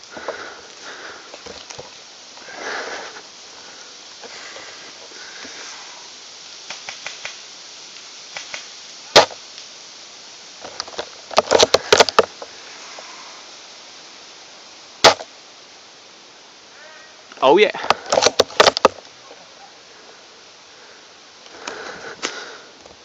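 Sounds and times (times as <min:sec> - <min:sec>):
airsoft gun shots: 0:09.2 - 0:09.4, 0:15.0 - 0:15.3.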